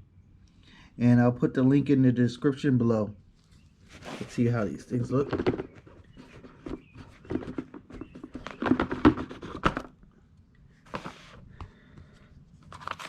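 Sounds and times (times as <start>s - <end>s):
packaging clicks and crinkles: 12.6s - 13.0s
packaging rustle: 12.6s - 13.0s.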